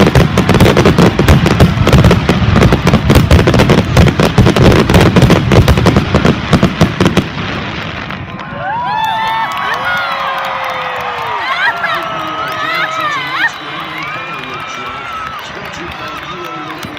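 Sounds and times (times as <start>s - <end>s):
deep fireworks booming: 0.0s - 8.9s
fireworks bangs and crackles: 0.0s - 16.9s.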